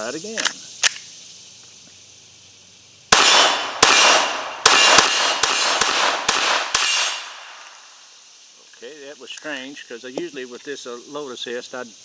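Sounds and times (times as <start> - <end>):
pistol shots: 3.1 - 7.8.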